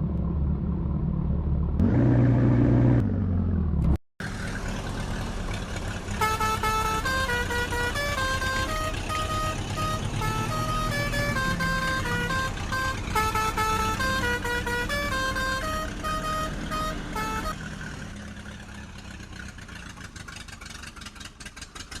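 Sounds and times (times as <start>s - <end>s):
low engine-like rumble: 0.0s - 22.0s
horn-like tune: 6.1s - 17.6s.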